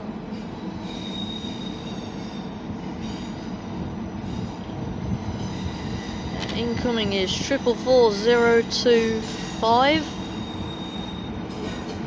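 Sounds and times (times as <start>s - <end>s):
train rumbling: 0.0s - 12.0s
faint wheel squeal: 0.6s - 3.5s, 10.3s - 11.9s.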